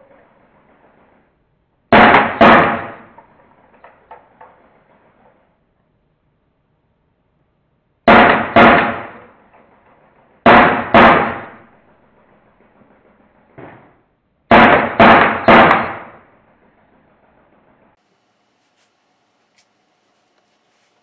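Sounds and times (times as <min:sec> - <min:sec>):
air gun shots: 0:01.9 - 0:03.9, 0:08.1 - 0:09.7, 0:10.4 - 0:11.8, 0:13.6 - 0:16.3.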